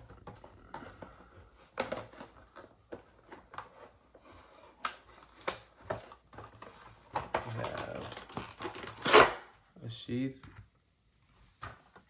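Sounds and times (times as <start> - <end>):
packaging rustling: 0.0 - 9.4.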